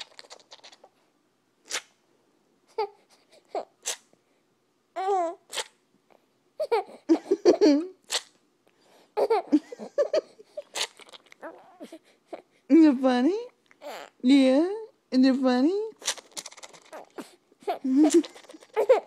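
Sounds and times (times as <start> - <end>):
person making silly noises: 10.6 - 11.9, 16.0 - 19.0.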